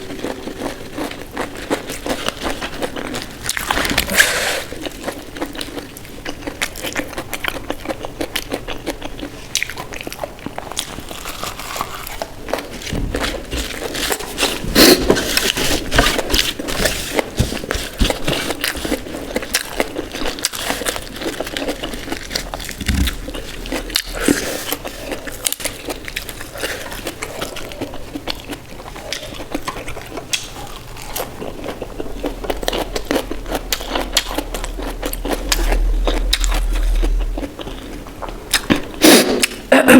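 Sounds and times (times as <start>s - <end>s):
person chewing food: 0.0s - 39.7s
scrapes: 20.5s - 26.0s, 30.5s - 39.6s.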